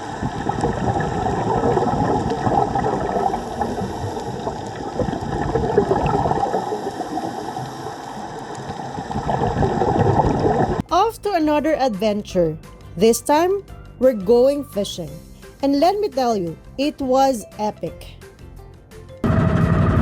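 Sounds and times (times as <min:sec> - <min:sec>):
churning gurgling water: 0:00.0 - 0:10.8.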